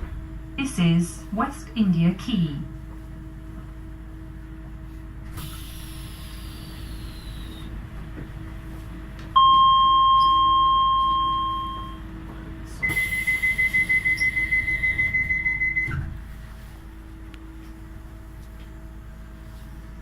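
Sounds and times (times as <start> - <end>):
dull thud of doors: 0.0 - 0.4
door chime: 9.4 - 12.0.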